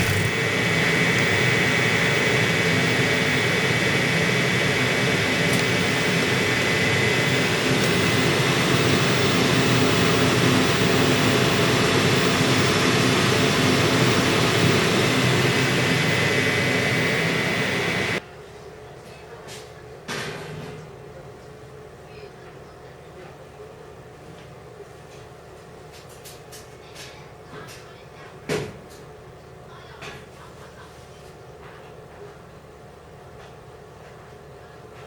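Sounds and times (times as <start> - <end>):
high whine: 0.0 - 18.2
oven fan and burner whirring: 0.0 - 35.0.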